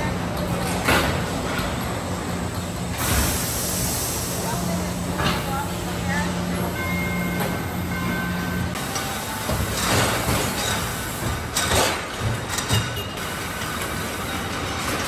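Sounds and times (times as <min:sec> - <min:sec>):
machinery hum: 0:00.0 - 0:15.0
air hiss bursts: 0:03.0 - 0:04.5.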